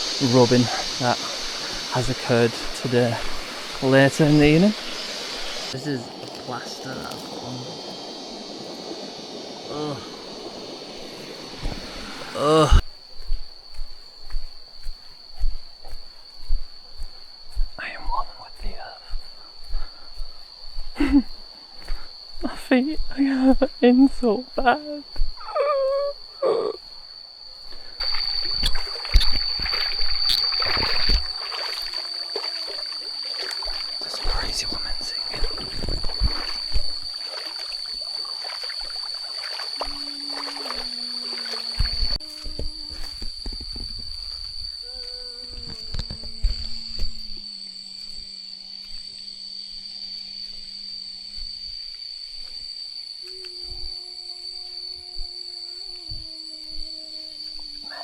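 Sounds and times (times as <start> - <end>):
insects buzzing: 0.0 - 58.0
rustling with low thumps: 33.7 - 37.2.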